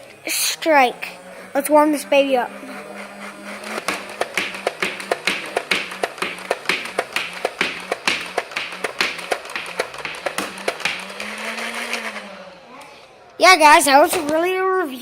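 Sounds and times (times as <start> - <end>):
toy blaster motor hum: 0.0 - 13.2
toy blaster firing clicks: 3.6 - 12.2.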